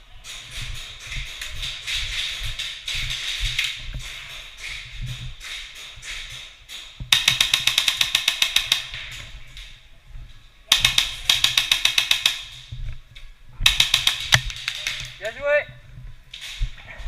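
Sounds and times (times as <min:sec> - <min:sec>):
airsoft gun full-auto fire: 0:07.1 - 0:08.9, 0:10.7 - 0:12.5, 0:13.6 - 0:14.7.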